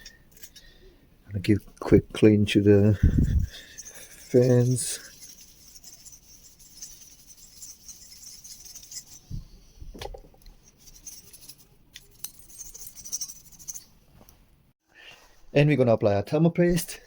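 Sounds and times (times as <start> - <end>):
scrubbing a fan: 2.7 - 9.5, 10.5 - 13.8.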